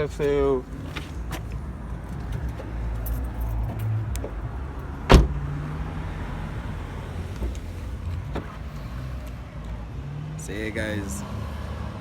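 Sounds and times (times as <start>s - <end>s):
car cabin rumble: 5.0s - 5.5s, 7.0s - 8.7s.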